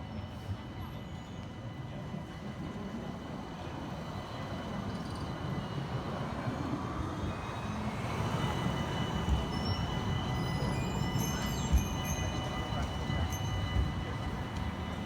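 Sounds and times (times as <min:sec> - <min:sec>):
tram rumbling on rails: 0:00.0 - 0:15.0.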